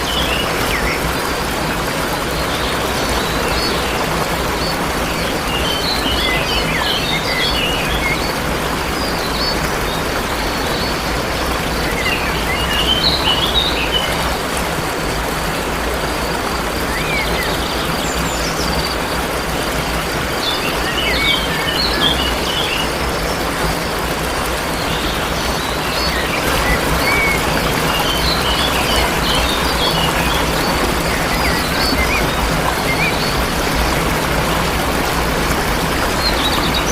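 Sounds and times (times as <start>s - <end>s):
waterfall rushing: 0.0s - 36.9s
small birds chirping: 16.4s - 36.9s.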